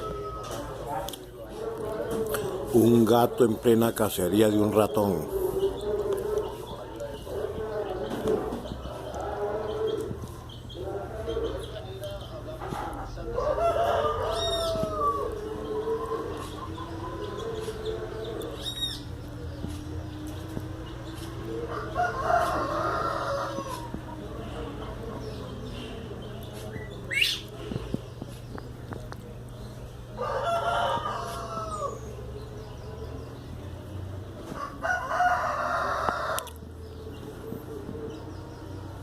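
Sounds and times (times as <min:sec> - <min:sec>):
rooster crowing: 0:00.0 - 0:00.9, 0:13.4 - 0:16.3, 0:21.6 - 0:24.0, 0:30.1 - 0:32.1, 0:34.6 - 0:36.6.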